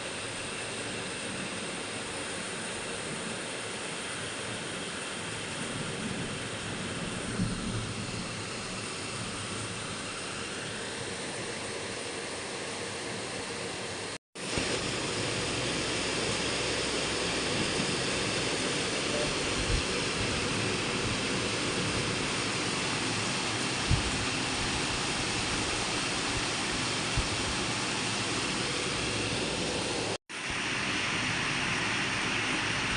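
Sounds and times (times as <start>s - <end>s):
steady rain falling: 0.0s - 32.9s.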